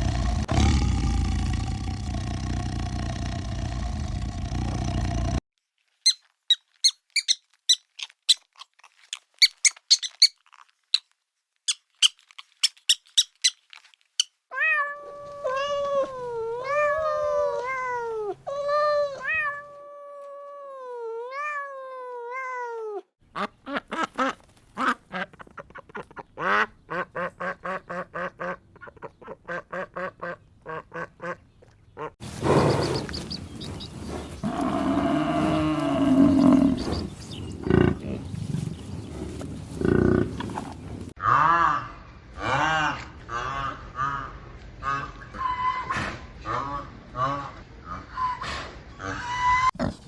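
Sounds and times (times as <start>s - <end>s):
cat meowing: 14.5s - 23.0s
fast short repeated animal calls: 32.2s - 37.3s
harsh animal calling: 32.2s - 43.0s.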